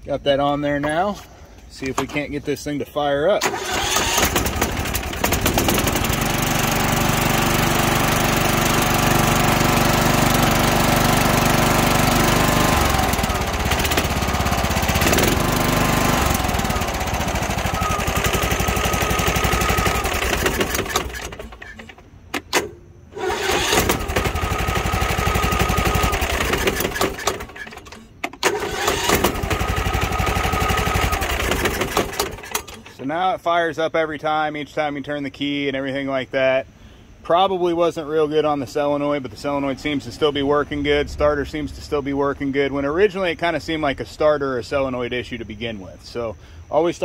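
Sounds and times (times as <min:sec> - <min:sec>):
engine restarting with key: 0:03.4 - 0:33.0
riding mower engine running: 0:03.4 - 0:33.1, 0:38.0 - 0:46.7.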